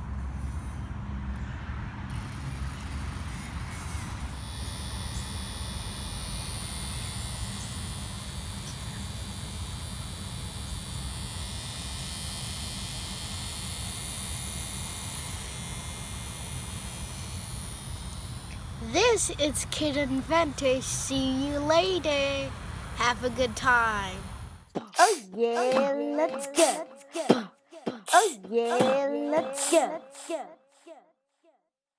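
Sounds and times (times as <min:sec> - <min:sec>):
small electric motor humming: 0:02.1 - 0:24.7
thin high whine: 0:16.8 - 0:27.4.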